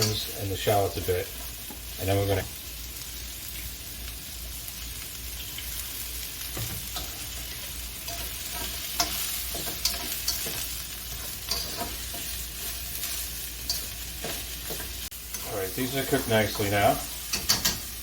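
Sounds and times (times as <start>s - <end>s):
vegetables sizzling in oil: 0.0s - 18.0s
spatula scraping a pan: 6.5s - 18.0s.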